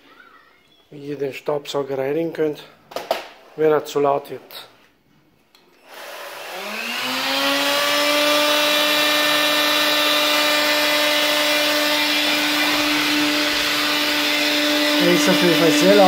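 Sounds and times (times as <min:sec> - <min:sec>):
vacuum motor whining: 0:05.8 - 0:16.0.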